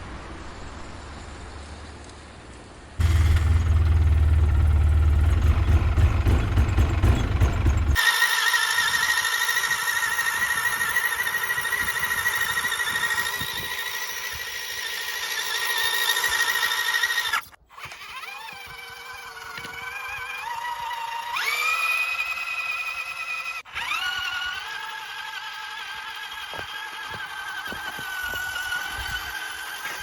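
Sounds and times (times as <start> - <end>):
electric motor whine: 6.5 - 30.0.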